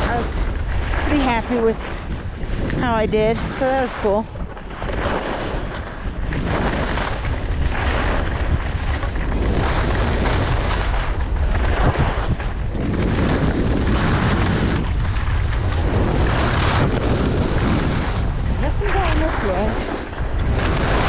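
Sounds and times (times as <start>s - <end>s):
wind buffeting microphone: 0.0s - 21.0s
skis hissing over snow: 1.0s - 2.3s.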